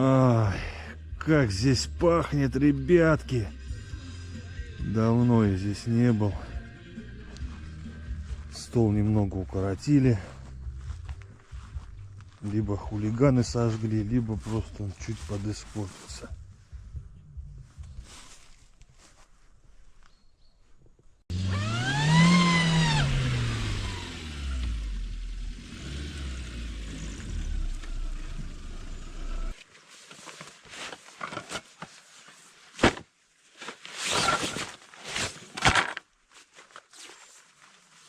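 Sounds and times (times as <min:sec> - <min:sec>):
rustling: 0:17.6 - 0:20.8, 0:27.2 - 0:38.0
vehicle engine starting and running: 0:21.3 - 0:29.6.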